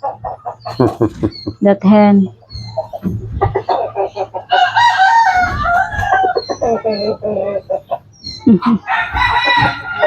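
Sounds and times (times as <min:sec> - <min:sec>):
hens clucking: 0:00.0 - 0:10.0
rooster crowing: 0:04.5 - 0:06.4, 0:08.9 - 0:10.0.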